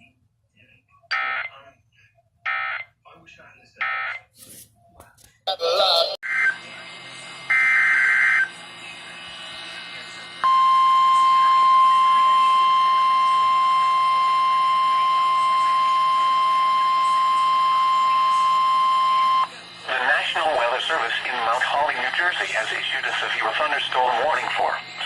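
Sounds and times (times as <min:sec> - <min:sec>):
steady alarm tone: 0:06.2 - 0:25.0.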